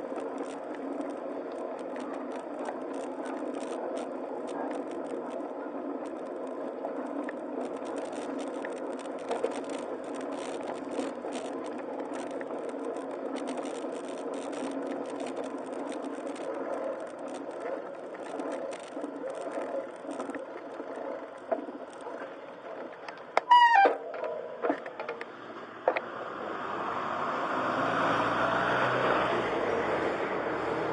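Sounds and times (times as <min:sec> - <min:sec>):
clicks and rattles: 0:00.0 - 0:26.0
vehicle running noise: 0:24.2 - 0:30.9.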